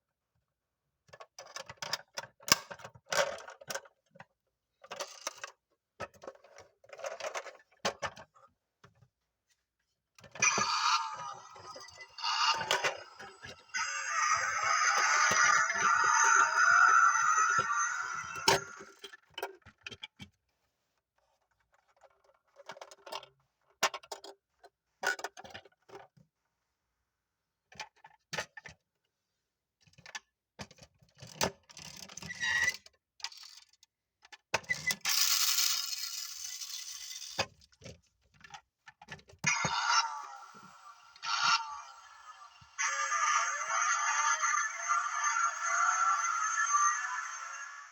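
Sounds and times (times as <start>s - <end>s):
toy metal truck rattling: 34.7s - 37.5s.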